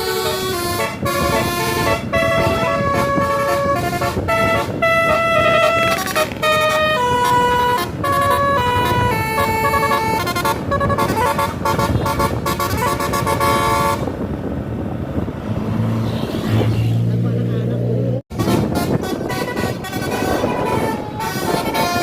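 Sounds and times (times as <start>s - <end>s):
bus horn playing a tune: 0.0s - 14.2s, 18.3s - 22.0s.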